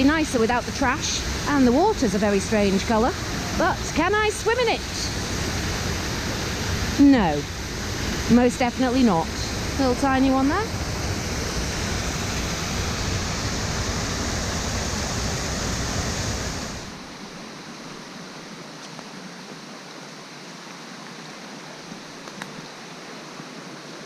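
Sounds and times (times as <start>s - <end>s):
water rushing over stone weir: 0.0s - 17.3s.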